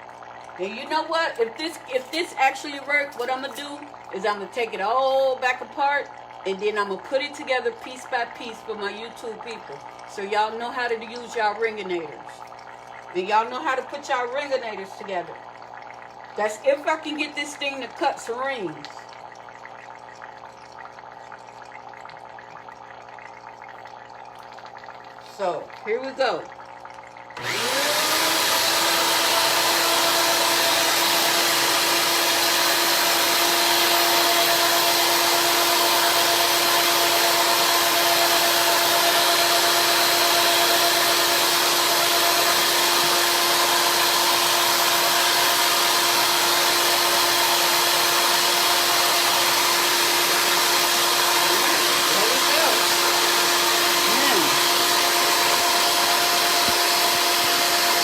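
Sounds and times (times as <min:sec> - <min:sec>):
cutting machine motor humming: 0:27.4 - 0:58.0.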